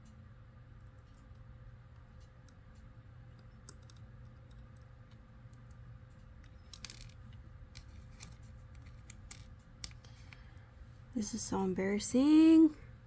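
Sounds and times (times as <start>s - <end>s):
plastic pieces clicking: 6.7s - 7.2s.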